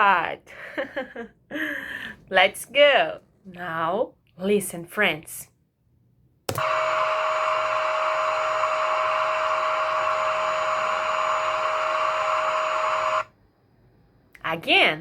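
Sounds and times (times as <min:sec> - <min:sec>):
vacuum cleaner running: 0:06.5 - 0:13.3.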